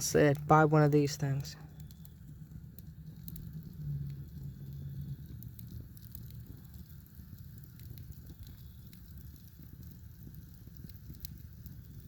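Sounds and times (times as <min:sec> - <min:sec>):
fire crackling and popping: 0:00.0 - 0:12.0
low fire rumble: 0:00.0 - 0:12.0.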